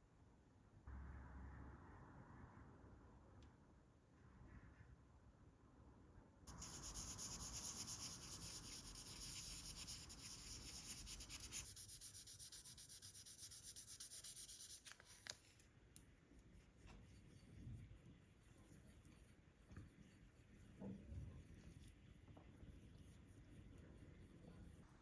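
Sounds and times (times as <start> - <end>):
sandpaper rubbing: 6.5 - 15.3.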